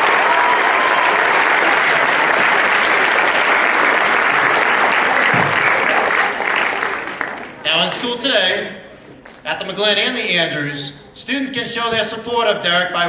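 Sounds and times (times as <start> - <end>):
audience applauding and cheering: 0.0 - 7.8.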